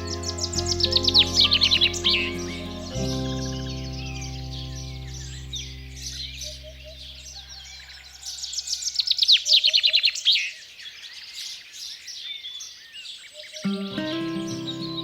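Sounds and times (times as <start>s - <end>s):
held music chord: 0.0s - 6.8s, 13.7s - 15.0s
bird singing falling notes: 0.0s - 7.4s
small songbirds chirping: 0.0s - 15.0s.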